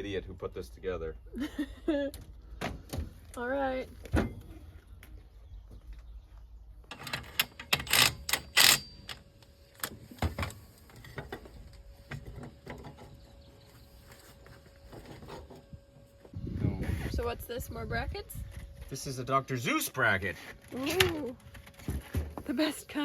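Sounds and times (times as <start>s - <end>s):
metal parts and tools clicking: 6.9s - 11.3s.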